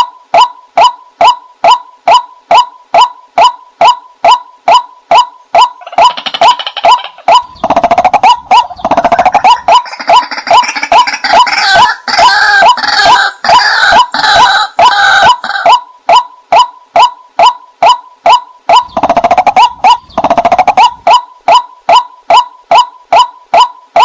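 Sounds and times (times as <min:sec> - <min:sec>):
dense bird calling: 0:00.0 - 0:24.0
fast stuttering bird chatter: 0:05.8 - 0:11.7, 0:18.8 - 0:21.1
bird calling short repeated notes: 0:15.4 - 0:24.0.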